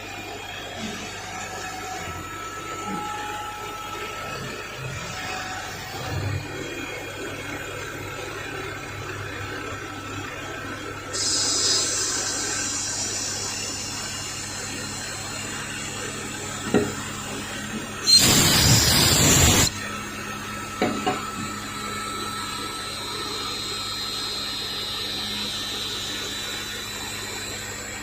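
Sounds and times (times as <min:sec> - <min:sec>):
machine tool humming: 0:00.0 - 0:28.0
high whine: 0:10.8 - 0:28.0
loud hissing burst: 0:11.2 - 0:14.1, 0:18.1 - 0:19.7.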